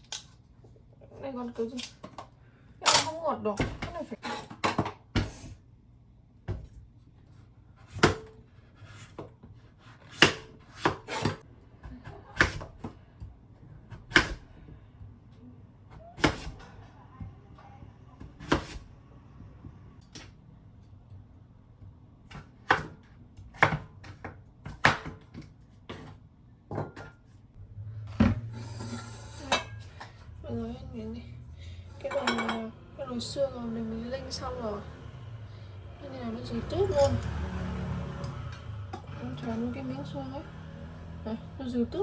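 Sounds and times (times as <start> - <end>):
knife chopping on cutting board: 7.8 - 11.4, 18.4 - 18.8, 22.3 - 26.2.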